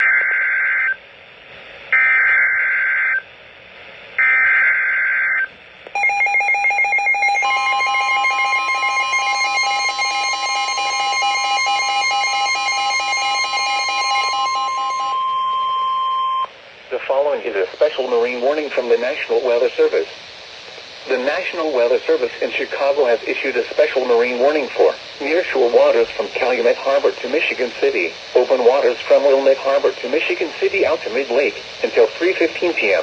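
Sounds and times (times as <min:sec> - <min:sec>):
shrill attention signal tones: 0:06.0 - 0:16.5.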